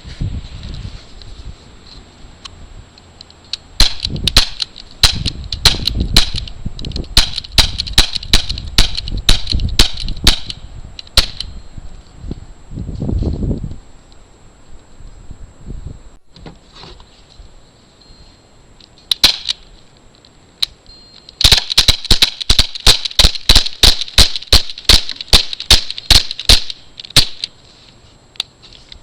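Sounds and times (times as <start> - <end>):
air pistol shots: 3.8 - 6.5, 7.1 - 11.5, 19.1 - 19.6, 21.4 - 27.5.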